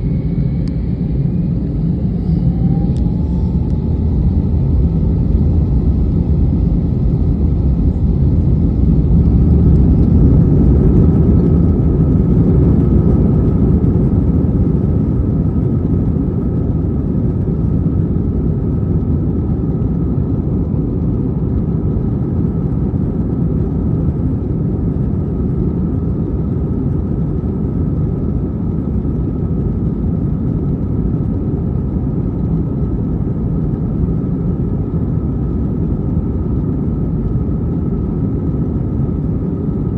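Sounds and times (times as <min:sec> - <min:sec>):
faint engine whine: 0:00.0 - 0:39.9
jet engines rumbling: 0:00.0 - 0:39.9.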